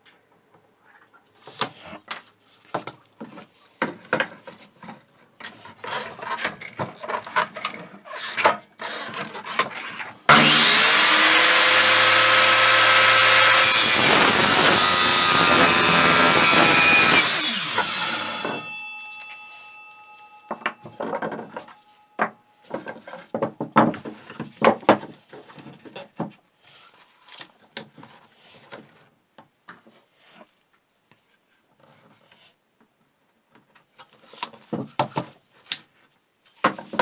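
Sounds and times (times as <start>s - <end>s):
tapping and scraping of parts: 1.6s - 10.4s
power tool whining: 10.3s - 21.1s.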